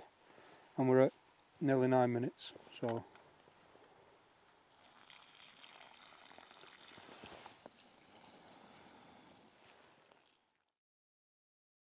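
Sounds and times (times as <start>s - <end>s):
kettle hissing: 4.7s - 10.6s.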